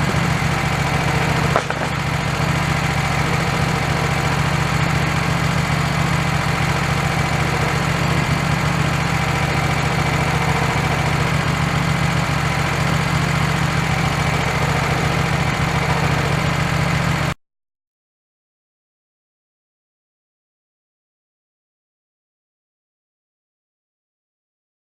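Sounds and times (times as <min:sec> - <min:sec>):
sawmill engine running: 0:00.0 - 0:17.4.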